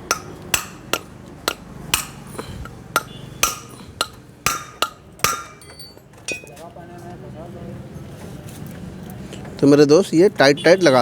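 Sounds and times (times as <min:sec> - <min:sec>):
hammer striking metal: 0:00.0 - 0:06.5.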